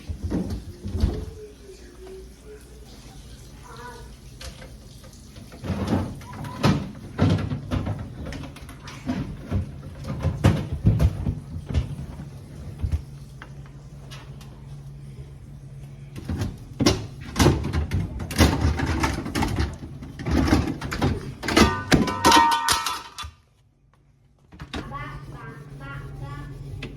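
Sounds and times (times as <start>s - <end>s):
refrigerator drawers sliding and clattering: 5.5s - 13.1s, 16.2s - 22.6s
steady low hum: 7.5s - 22.2s, 22.8s - 26.9s.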